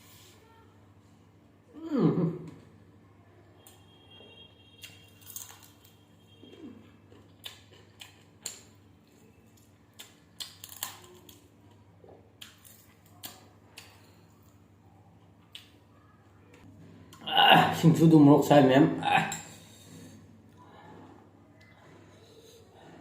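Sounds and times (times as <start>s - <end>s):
chewing with mouth smacks: 4.8s - 14.6s
small crunches of chewing: 4.8s - 14.6s.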